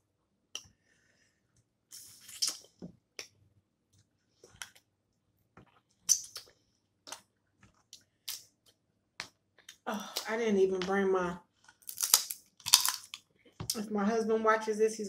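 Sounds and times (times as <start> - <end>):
crab legs cracking: 11.7 - 13.3.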